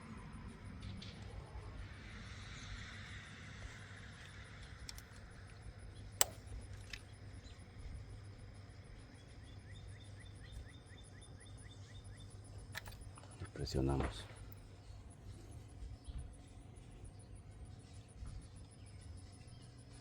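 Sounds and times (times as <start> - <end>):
insect chirping: 0.0 - 20.0
low hum: 0.0 - 20.0
electrical connector clicking: 6.2 - 7.0.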